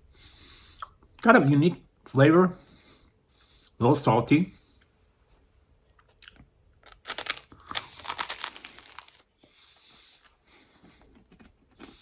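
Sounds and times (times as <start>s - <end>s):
dry toast being chewed: 5.9s - 12.0s.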